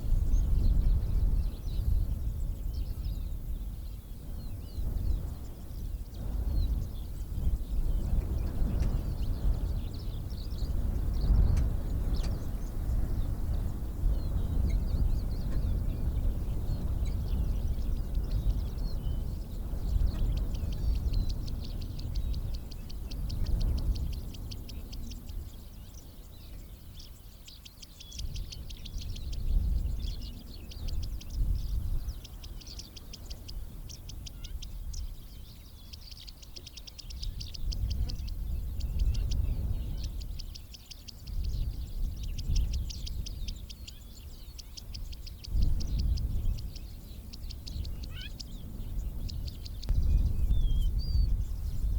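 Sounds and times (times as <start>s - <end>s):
birds chirping: 0.0s - 51.9s
low rumble: 45.8s - 51.9s.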